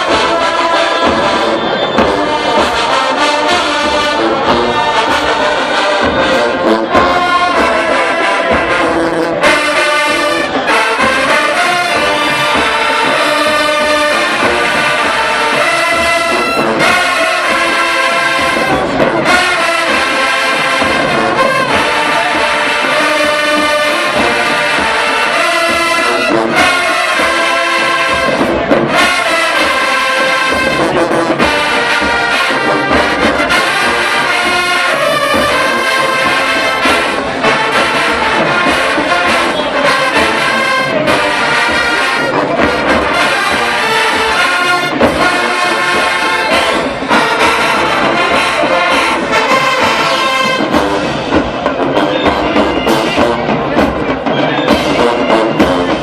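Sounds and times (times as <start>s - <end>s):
marching band brass playing: 0.0s - 56.0s.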